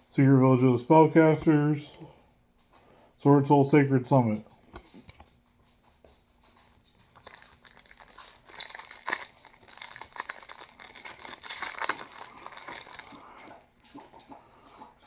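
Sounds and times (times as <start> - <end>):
foil wrapper crinkling and tearing: 7.1 - 13.5.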